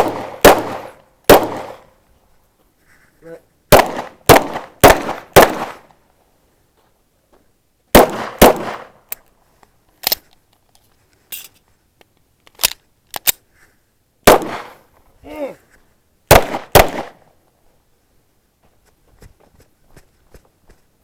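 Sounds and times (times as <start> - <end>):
gunshots with echo: 0.0 - 1.8, 3.7 - 5.8, 8.0 - 8.9, 14.3 - 14.8, 16.3 - 17.2
quieter gunshot cracks: 0.0 - 1.8, 8.0 - 9.0, 14.3 - 14.8, 16.3 - 17.2.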